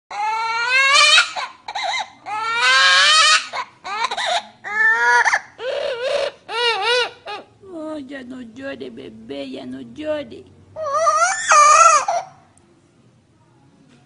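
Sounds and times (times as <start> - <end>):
parrot imitating crying baby: 0.1 - 7.6, 10.8 - 12.5.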